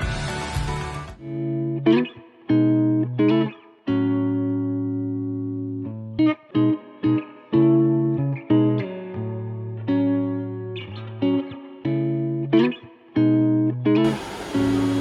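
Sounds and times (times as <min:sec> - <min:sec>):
fuller music arrangement: 0:01.2 - 0:14.1
guitar chords ringing: 0:14.0 - 0:15.0.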